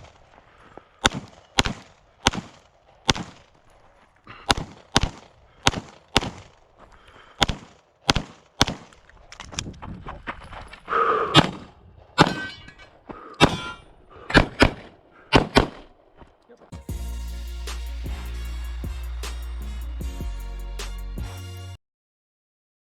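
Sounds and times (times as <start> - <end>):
pistol shots: 1.0 - 3.5, 4.4 - 6.6, 7.4 - 9.0, 14.3 - 15.8
metallic clang: 12.2 - 13.9.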